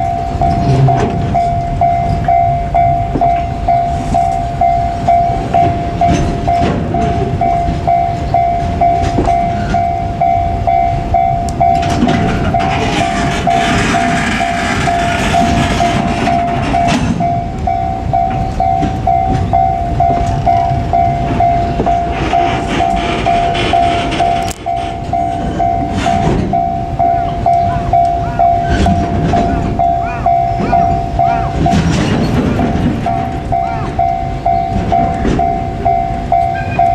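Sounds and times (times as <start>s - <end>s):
freight train rumbling past: 0.0s - 36.9s
level-crossing bell ringing: 0.0s - 36.9s.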